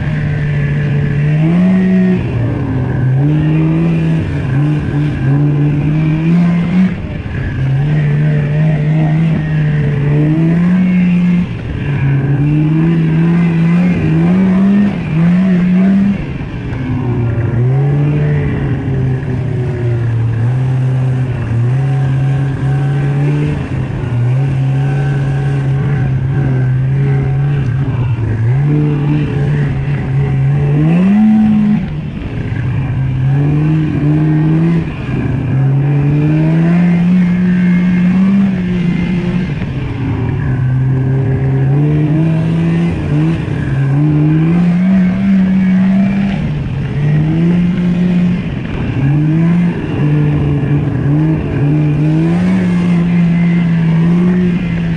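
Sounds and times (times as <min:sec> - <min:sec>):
snowmobile engine revving: 0:00.0 - 0:54.9.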